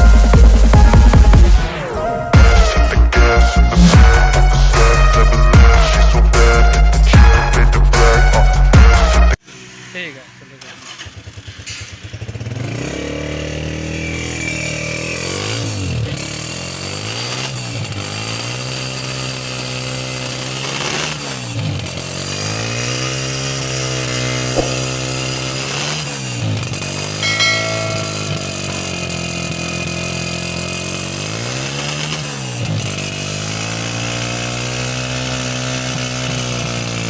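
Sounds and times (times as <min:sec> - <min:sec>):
motorcycle engine revving: 0:09.5 - 0:37.0.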